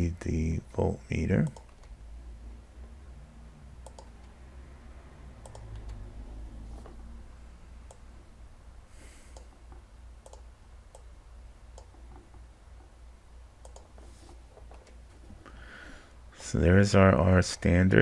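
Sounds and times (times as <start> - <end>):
low steady hum: 0.0 - 18.0
computer mouse clicks: 3.8 - 4.4, 5.4 - 6.0, 9.3 - 11.1, 11.7 - 12.3, 13.6 - 14.0.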